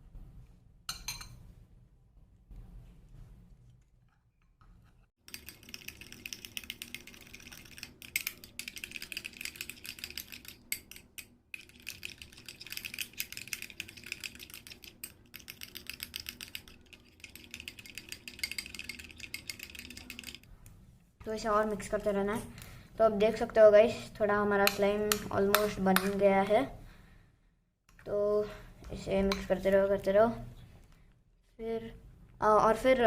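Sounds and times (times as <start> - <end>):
spoon stirring slime in glass bowl: 5.3 - 20.4, 24.5 - 26.2.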